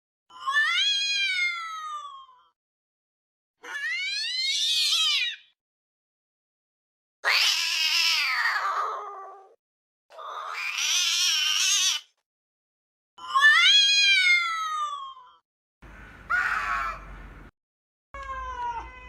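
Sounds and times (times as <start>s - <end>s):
angry cat yowling: 3.6s - 5.4s, 7.2s - 9.6s, 16.2s - 17.2s.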